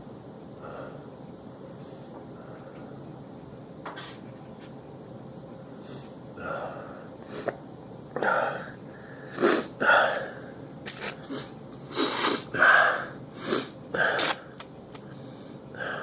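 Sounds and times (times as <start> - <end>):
man sniffing and snorting: 9.2 - 10.3, 11.0 - 14.4.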